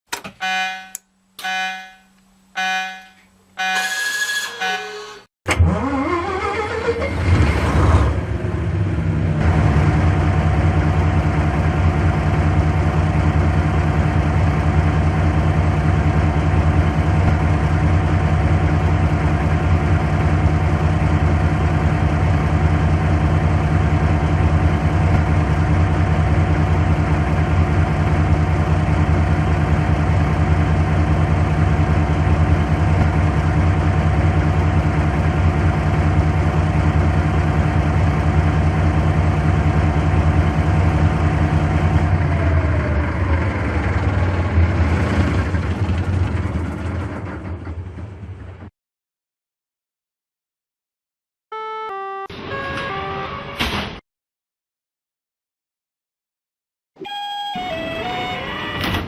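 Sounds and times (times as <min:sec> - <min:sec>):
vehicle engine idling: 0:08.3 - 0:48.6.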